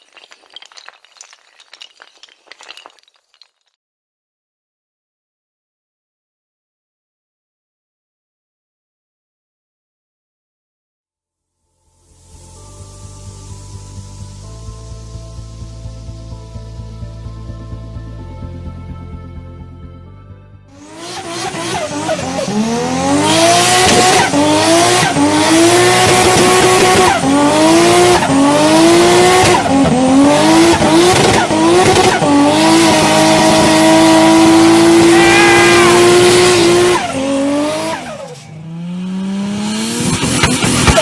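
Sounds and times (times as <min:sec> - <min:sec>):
car engine accelerating hard: 0:20.8 - 0:41.0.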